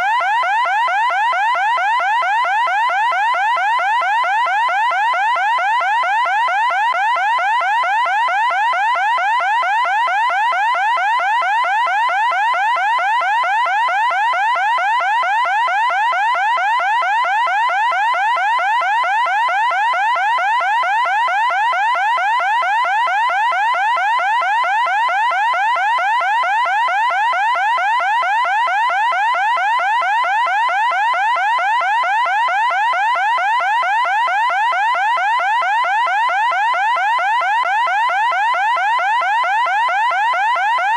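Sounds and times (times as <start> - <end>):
electronic siren whooping: 34.2 - 40.9.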